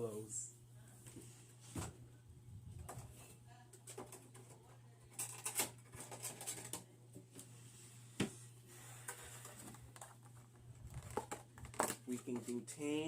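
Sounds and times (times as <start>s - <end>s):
steady low hum: 0.0s - 6.1s.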